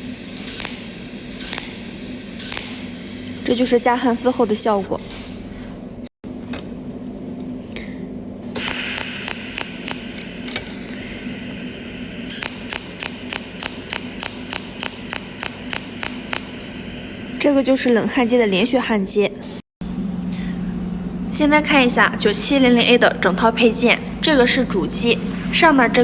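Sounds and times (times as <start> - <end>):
sharp zapping clicks: 0.0 - 4.3, 8.6 - 10.7, 12.2 - 17.8
welding machine hum and hiss: 0.0 - 5.8, 8.5 - 21.1.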